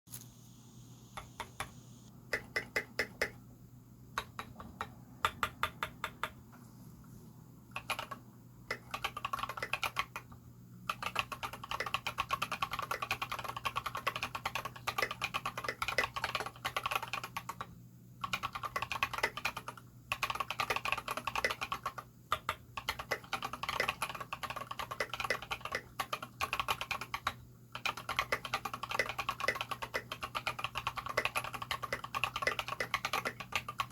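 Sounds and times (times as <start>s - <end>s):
mechanical keyboard typing: 1.2s - 3.4s, 4.2s - 6.4s, 7.7s - 33.9s.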